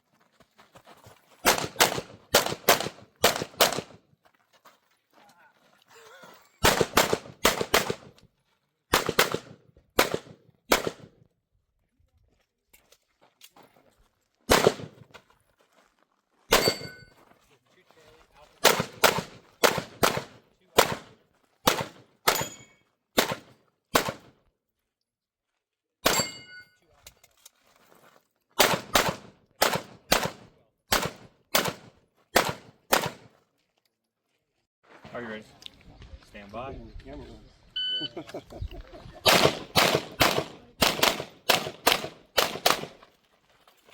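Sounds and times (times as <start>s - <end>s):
pistol shots with echo: 1.5s - 4.0s, 6.6s - 8.1s, 8.9s - 11.1s, 14.5s - 15.0s, 16.5s - 17.0s, 18.6s - 22.6s, 23.2s - 24.3s, 26.0s - 26.5s, 28.6s - 33.3s, 39.2s - 43.0s.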